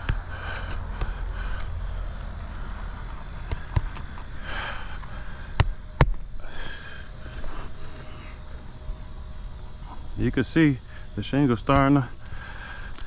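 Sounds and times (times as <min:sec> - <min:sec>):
steady low rumble: 0:00.0 - 0:10.2.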